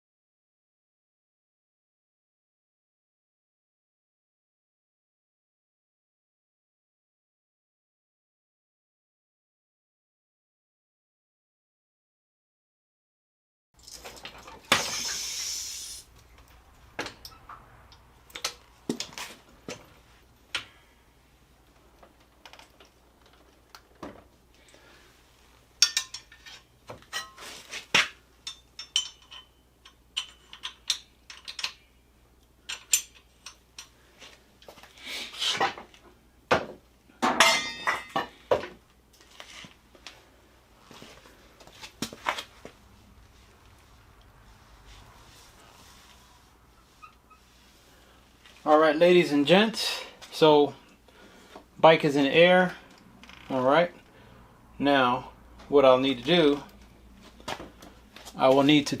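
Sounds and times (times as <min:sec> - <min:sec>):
metal tools clinking: 0:25.8 - 0:31.9, 0:32.6 - 0:33.9, 0:37.3 - 0:38.4.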